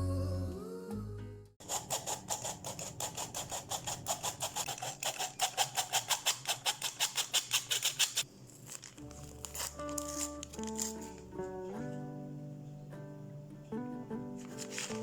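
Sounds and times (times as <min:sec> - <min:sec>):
rapid scraping strokes: 0:01.6 - 0:08.9
soft acoustic guitar music: 0:09.0 - 0:15.0.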